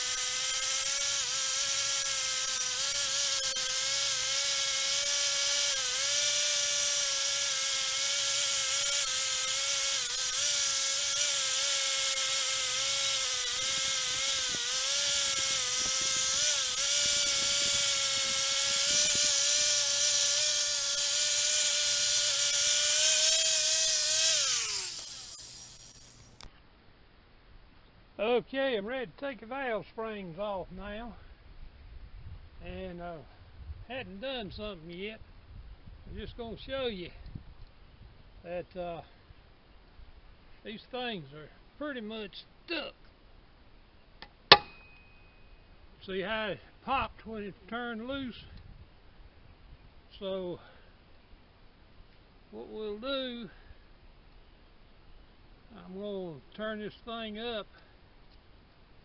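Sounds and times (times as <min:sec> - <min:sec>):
power tool running at high speed: 0:00.0 - 0:26.4
power tool winding down: 0:00.0 - 0:26.5.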